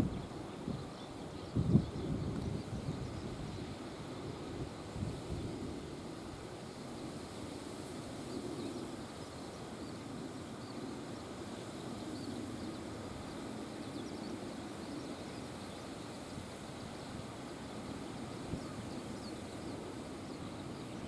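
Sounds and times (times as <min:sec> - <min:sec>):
wind buffeting microphone: 0:00.0 - 0:00.9, 0:01.5 - 0:03.8.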